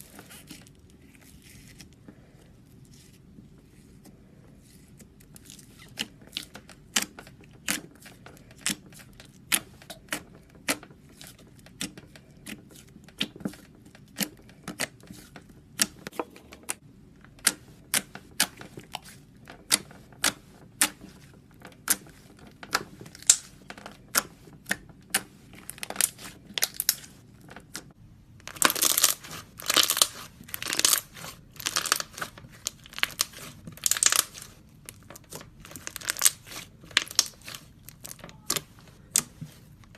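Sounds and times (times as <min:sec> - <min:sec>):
slime popping and squishing: 0:17.4 - 0:39.9.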